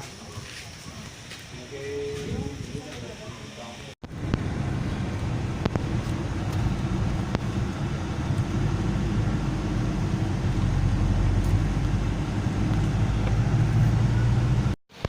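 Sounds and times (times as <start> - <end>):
road noise: 0.0 - 15.0
vehicle engine hum: 4.0 - 15.0.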